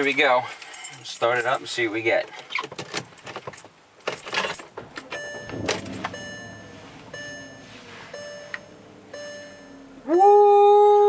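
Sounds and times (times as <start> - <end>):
car keys jangling: 0.2 - 7.6
car engine starting and idling: 4.7 - 10.2
two-note warning chime: 5.2 - 10.1.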